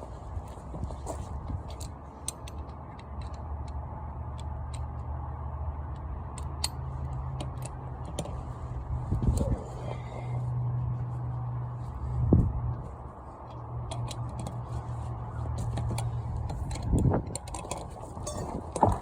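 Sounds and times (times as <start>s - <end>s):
low steady hum: 0.0s - 19.0s
socket wrench clicking: 13.5s - 14.6s.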